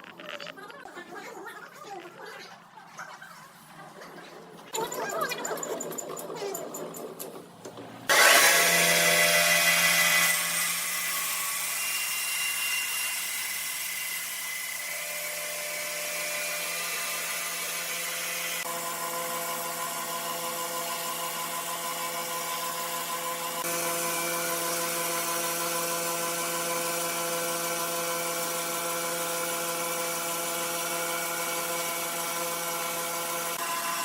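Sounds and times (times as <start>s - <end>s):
sawmill machinery whine: 8.1s - 34.0s.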